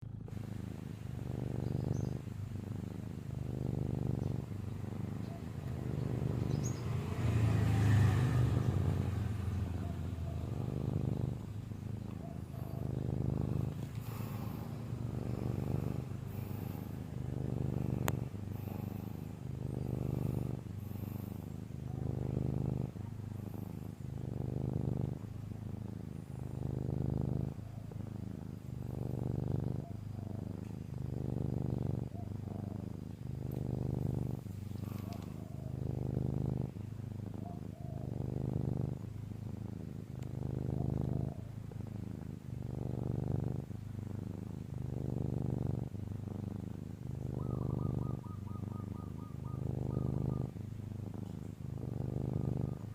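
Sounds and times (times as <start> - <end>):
person snoring: 12.7 - 21.4.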